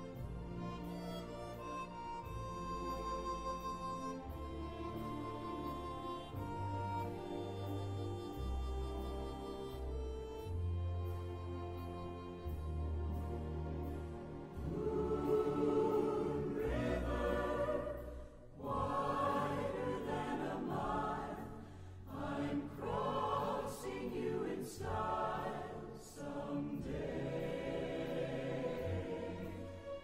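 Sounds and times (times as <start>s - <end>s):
choir singing slow phrases: 14.5s - 30.0s.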